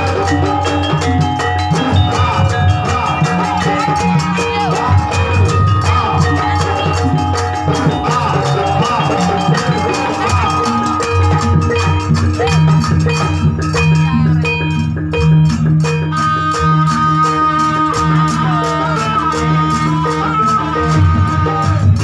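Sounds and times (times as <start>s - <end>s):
dance music with fast drumming: 0.0s - 14.2s.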